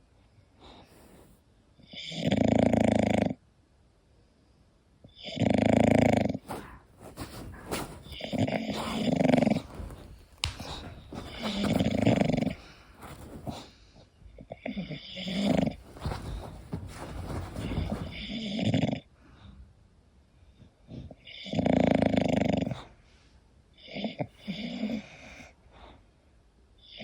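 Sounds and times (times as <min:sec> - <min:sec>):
dog snoring: 0:01.0 - 0:03.4, 0:05.2 - 0:13.8, 0:14.6 - 0:19.0, 0:21.3 - 0:22.9, 0:23.8 - 0:25.4.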